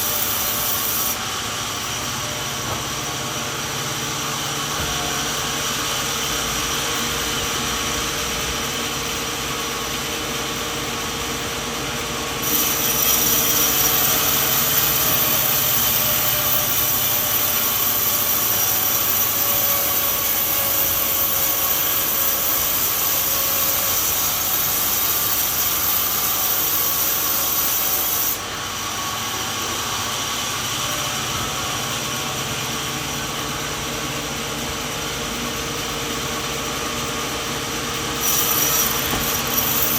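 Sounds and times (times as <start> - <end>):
saw blade cutting through wood: 0.0 - 1.3, 12.4 - 28.5, 38.1 - 39.9
sawmill running: 0.0 - 39.9.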